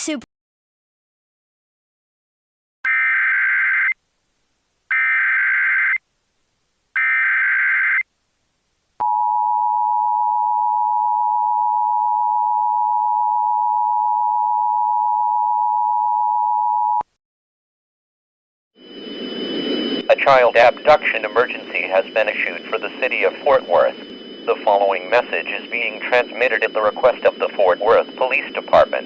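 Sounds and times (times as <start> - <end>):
data header bursts: 20.0 - 29.0.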